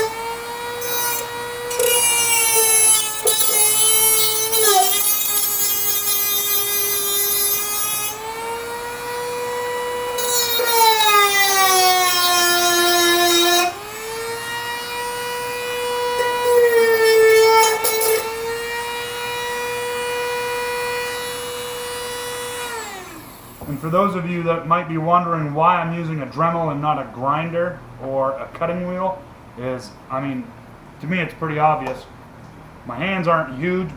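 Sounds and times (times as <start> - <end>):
harsh grinding hiss: 0.0 - 8.5, 22.4 - 24.2
rotary tool whining: 0.0 - 24.2.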